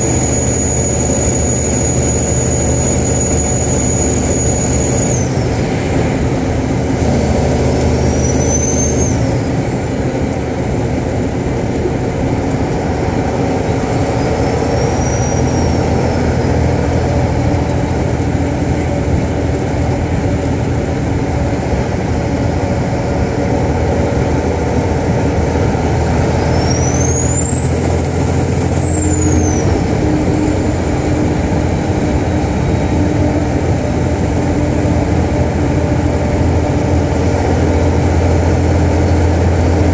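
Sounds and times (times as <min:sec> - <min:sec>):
turbo whistle: 0:00.0 - 0:05.4, 0:08.0 - 0:09.3, 0:26.5 - 0:29.8
loud diesel truck engine: 0:00.0 - 0:39.9.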